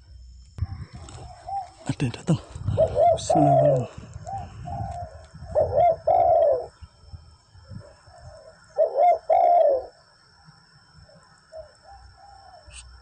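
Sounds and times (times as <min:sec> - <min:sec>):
dove cooing: 0:00.6 - 0:06.8, 0:07.6 - 0:10.0, 0:11.0 - 0:13.0.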